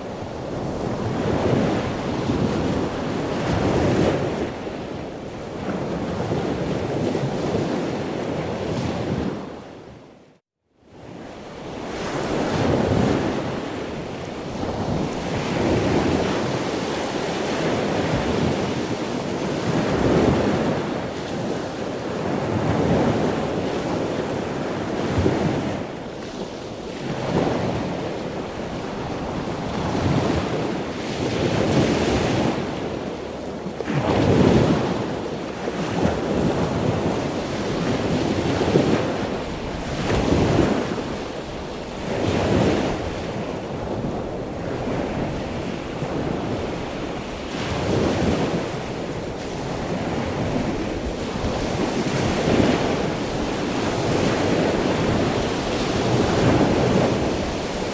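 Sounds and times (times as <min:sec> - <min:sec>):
ocean waves breaking: 0:11.9 - 0:57.9.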